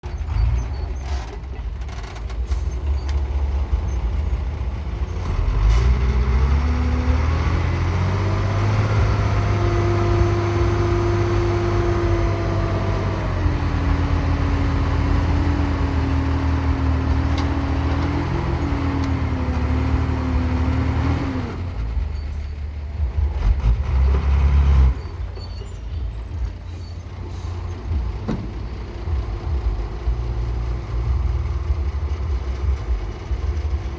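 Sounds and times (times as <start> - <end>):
diesel engine rumbling and revving: 0.0 - 33.9
steady engine whine: 4.6 - 33.9.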